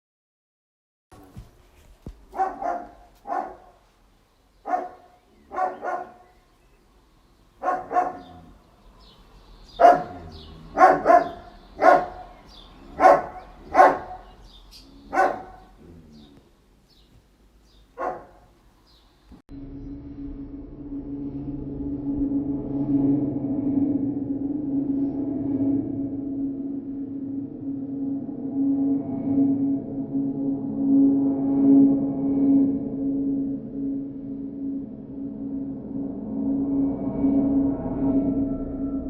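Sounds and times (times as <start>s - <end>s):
dog barking: 2.3s - 3.8s, 4.6s - 6.3s, 7.6s - 8.5s, 9.8s - 15.9s, 18.0s - 18.5s.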